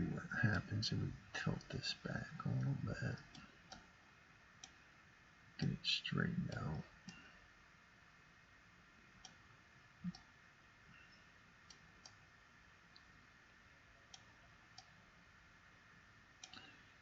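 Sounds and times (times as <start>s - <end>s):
computer mouse clicks: 3.2s - 3.9s, 4.6s - 4.8s, 10.0s - 10.3s, 11.0s - 12.2s, 16.4s - 16.8s.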